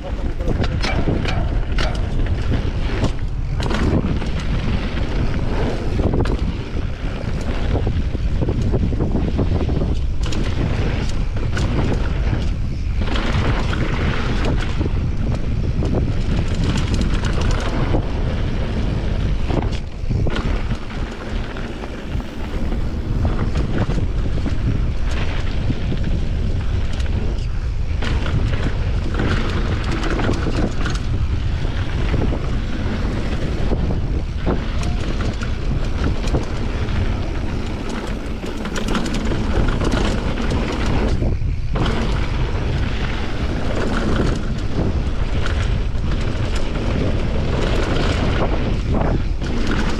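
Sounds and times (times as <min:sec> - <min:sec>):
bike rattling and knocking: 0:00.0 - 0:49.9
tyres rolling on dirt trail: 0:00.0 - 0:49.9
wind rushing over microphone: 0:00.0 - 0:49.9.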